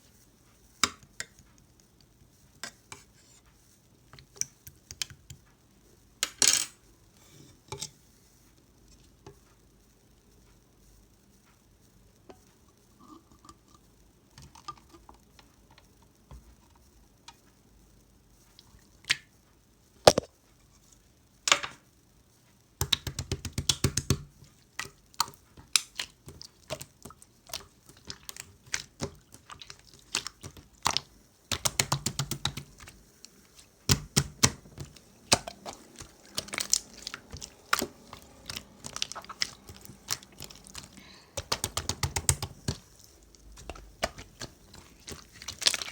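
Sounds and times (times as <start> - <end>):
slime squeezed with sticky pops: 25.1 - 33.0, 33.9 - 45.9.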